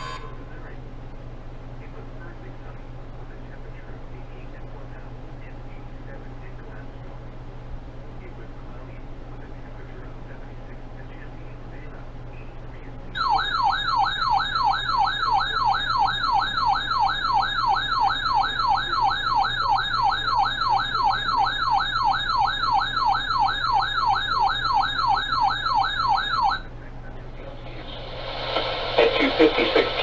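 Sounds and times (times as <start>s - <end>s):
radio hiss: 0.0s - 0.8s, 27.2s - 30.0s.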